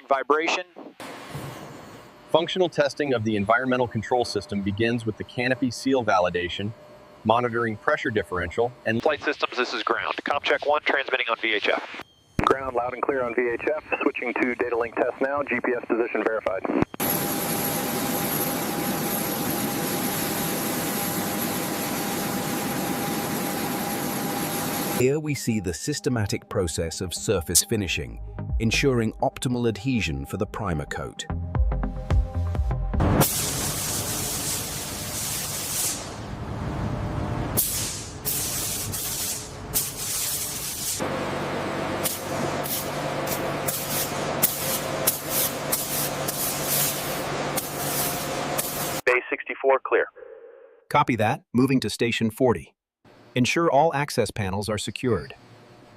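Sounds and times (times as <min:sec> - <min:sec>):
mid-pitched whine: 0:00.0 - 0:28.2
low machine hum: 0:01.0 - 0:09.3
compressed air hissing bursts: 0:33.2 - 0:36.2, 0:37.6 - 0:41.0, 0:42.0 - 0:49.0.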